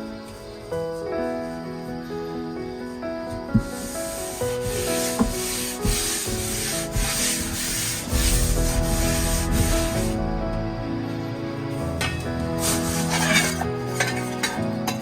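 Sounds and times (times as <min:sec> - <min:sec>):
gentle background music: 0:00.0 - 0:15.0
sharp knocks: 0:03.5 - 0:04.1
rough scraping strokes: 0:03.6 - 0:14.6.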